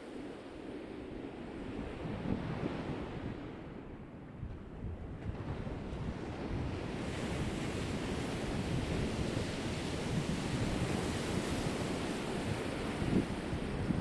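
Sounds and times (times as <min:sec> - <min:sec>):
wind blowing: 0:00.0 - 0:14.0
ocean surf washing ashore: 0:05.2 - 0:14.0.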